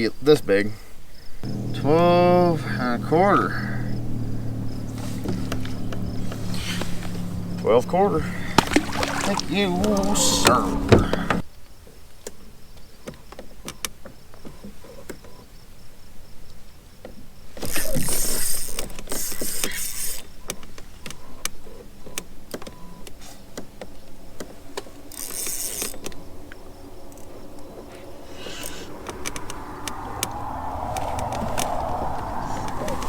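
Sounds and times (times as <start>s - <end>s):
fishing gear clicks and taps: 23.6s - 26.5s
rushing hiss-like noise: 24.6s - 33.0s.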